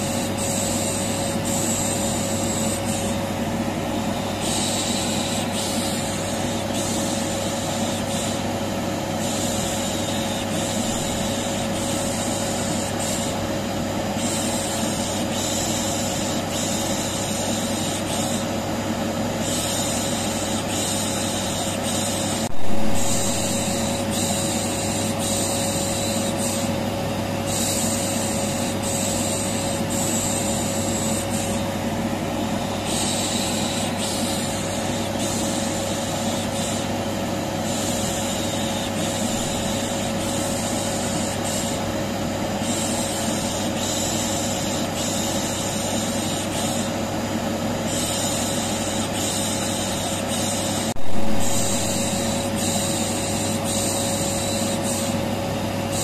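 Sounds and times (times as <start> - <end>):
vacuum cleaner humming: 22.3 - 36.0, 50.6 - 56.0.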